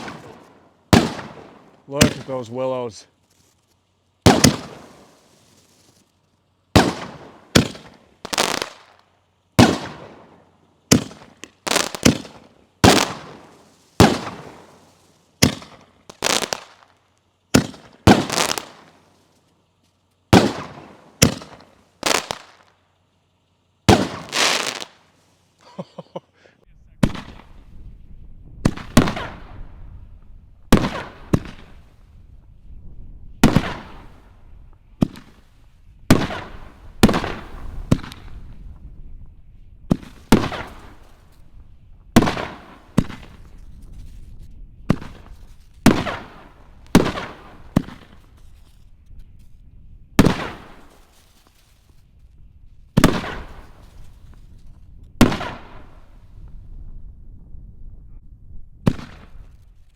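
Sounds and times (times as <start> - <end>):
firework shells booming: 0.0 - 3.0, 4.2 - 5.3, 6.7 - 19.1, 20.3 - 22.8, 23.8 - 26.2, 27.0 - 27.9, 28.6 - 32.0, 33.3 - 48.8, 50.2 - 51.3, 52.9 - 56.4, 58.8 - 59.8.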